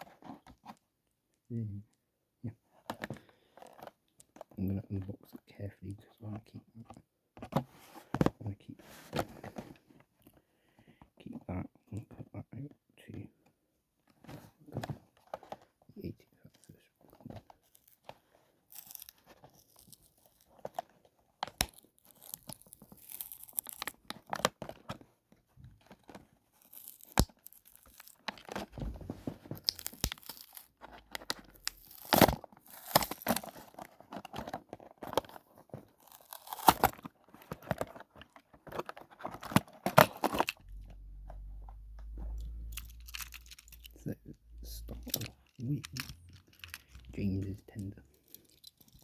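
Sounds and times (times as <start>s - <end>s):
packaging tearing and crinkling: 18.7s - 20.6s, 21.5s - 24.5s, 26.6s - 40.7s, 41.8s - 44.0s.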